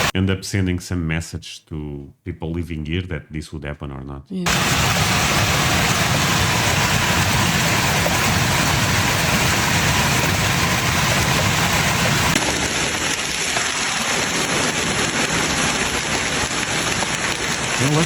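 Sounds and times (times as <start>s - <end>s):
heavy low rumble: 4.5s - 12.4s
hail pelting down: 4.5s - 18.0s.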